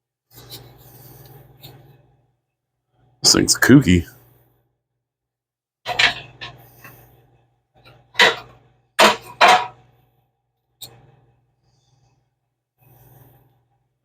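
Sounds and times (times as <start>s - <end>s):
metal parts clanking: 5.9s - 6.6s, 8.2s - 9.8s.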